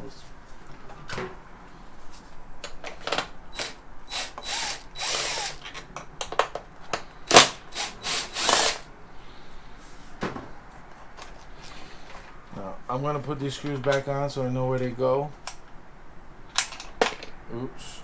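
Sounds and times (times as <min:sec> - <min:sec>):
cordless drill whirring: 0:03.5 - 0:05.7, 0:07.3 - 0:08.9.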